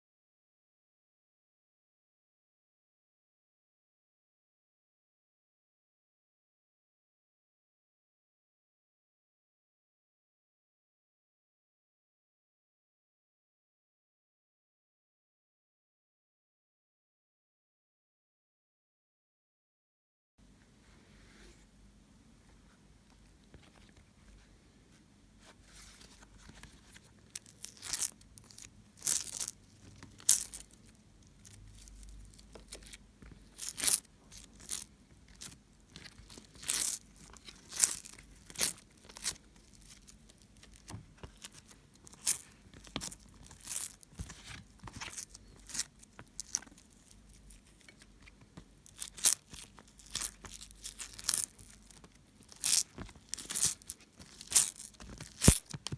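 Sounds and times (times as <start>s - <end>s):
slime crackling and popping: 27.4s - 30.8s, 31.4s - 47.1s, 48.9s - 55.9s.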